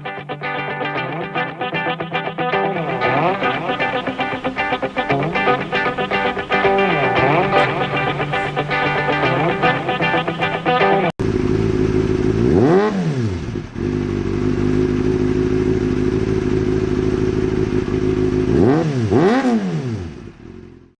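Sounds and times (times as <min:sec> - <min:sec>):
engine idling and revving: 0:11.2 - 0:20.9.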